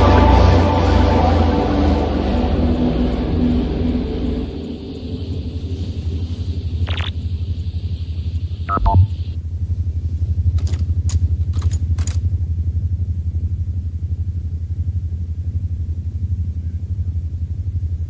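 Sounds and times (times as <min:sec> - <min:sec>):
high electronic blips: 0:08.7 - 0:09.2
falling electronic tone: 0:08.7 - 0:09.3.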